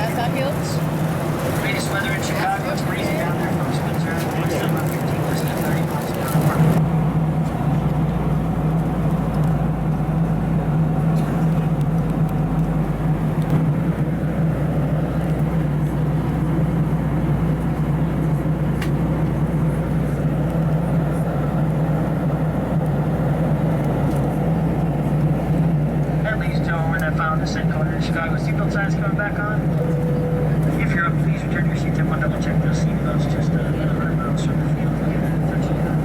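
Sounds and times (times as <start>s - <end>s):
airplane cabin airflow and engine: 0.0s - 36.0s
constant low hum: 0.0s - 36.0s.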